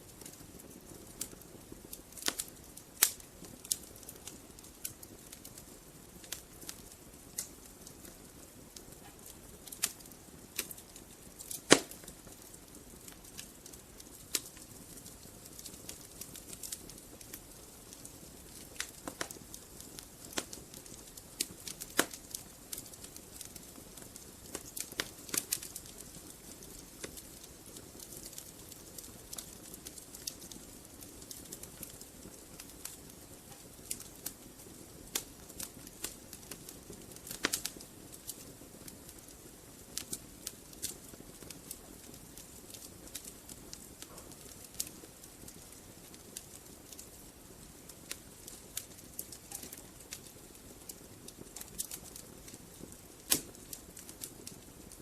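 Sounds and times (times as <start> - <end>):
fire pops: 0.0 - 55.0
wood fire crackling: 0.0 - 55.0.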